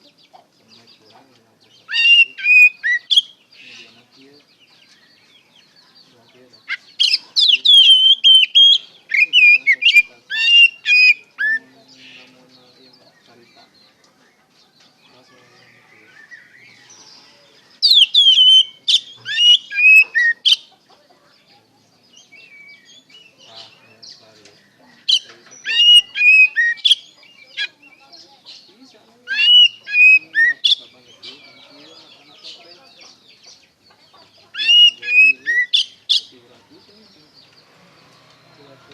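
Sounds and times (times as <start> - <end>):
bird singing whistled phrases: 1.9 - 3.8, 7.0 - 11.6, 17.8 - 20.6, 22.2 - 23.4, 25.1 - 28.1, 29.3 - 31.6, 34.6 - 36.3.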